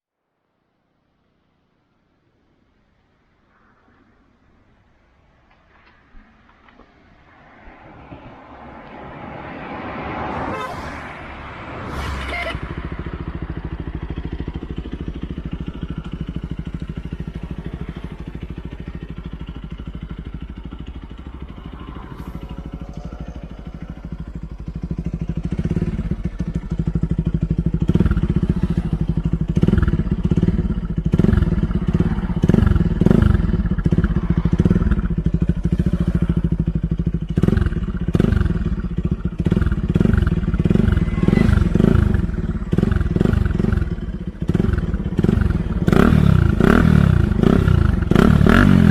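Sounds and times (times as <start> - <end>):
motorcycle engine revving: 8.0 - 48.9
motorcycle engine idling: 12.3 - 48.9.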